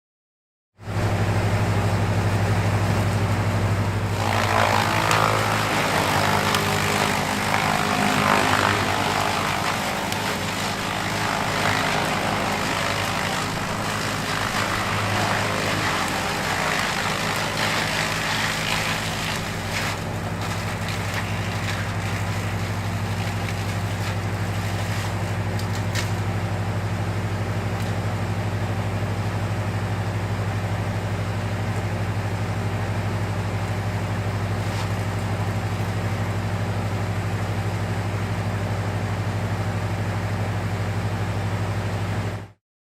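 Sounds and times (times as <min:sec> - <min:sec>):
woodchipper engine drone: 0:00.8 - 0:42.6
sharp wood cracks: 0:04.1 - 0:26.4
wood shredding and crackling: 0:04.1 - 0:26.5.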